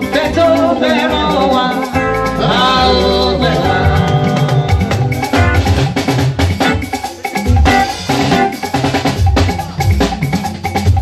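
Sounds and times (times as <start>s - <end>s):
danceable band music: 0.0s - 11.0s.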